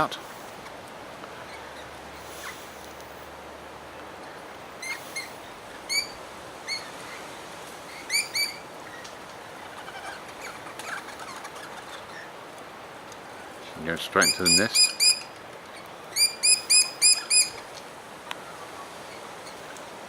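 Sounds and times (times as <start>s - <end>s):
background hiss: 0.0s - 20.0s
faint bird twittering: 1.3s - 3.4s, 4.3s - 12.4s, 13.2s - 19.9s
bird chirps: 4.7s - 7.2s, 7.9s - 12.3s, 14.2s - 17.7s.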